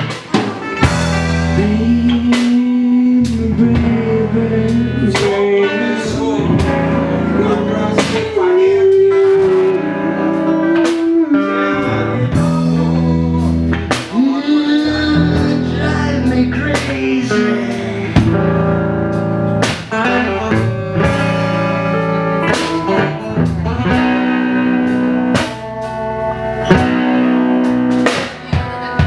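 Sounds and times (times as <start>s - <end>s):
drum kit hits: 0.0s - 2.8s, 6.6s - 8.5s, 18.2s - 20.3s, 26.7s - 29.0s
reggae band playing: 0.0s - 29.0s.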